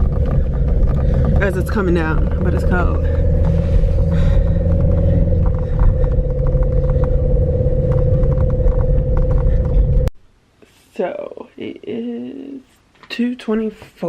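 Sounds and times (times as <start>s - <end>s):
car road and engine rumble: 0.0s - 10.1s
constant hum: 0.0s - 12.8s.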